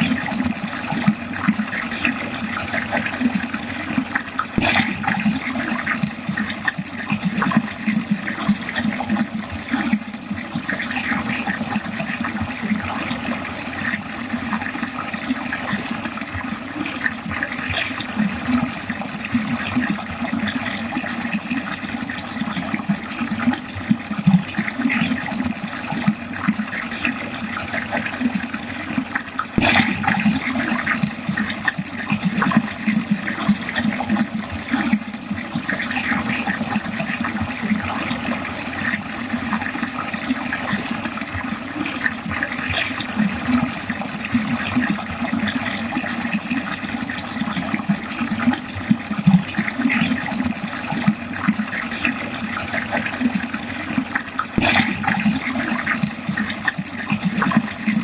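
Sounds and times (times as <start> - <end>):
water running down a drain: 0.0 - 58.0.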